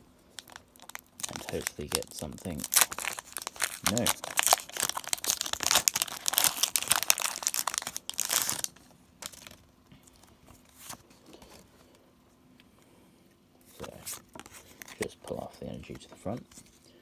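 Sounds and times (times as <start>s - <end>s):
foil wrapper tearing and crinkling: 0.4s - 9.6s.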